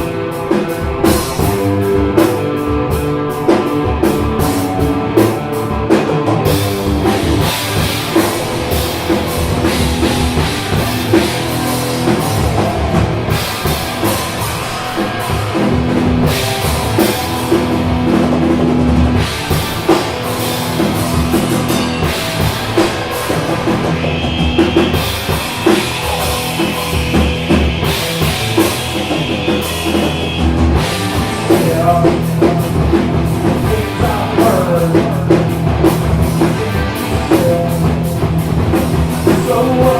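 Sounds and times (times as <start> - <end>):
rock band playing: 0.0 - 39.9
held high tone: 19.9 - 30.6.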